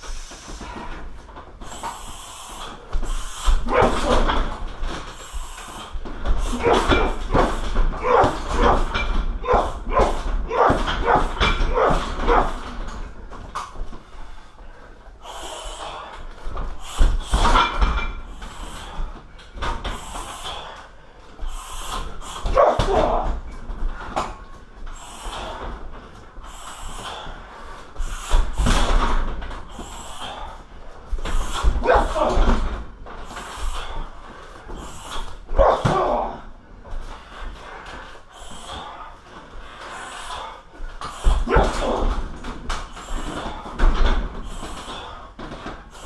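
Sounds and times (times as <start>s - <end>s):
punches and kicks on heavy bag: 3.0s - 13.3s, 22.1s - 23.5s, 31.1s - 34.0s, 34.8s - 36.5s, 41.1s - 46.0s.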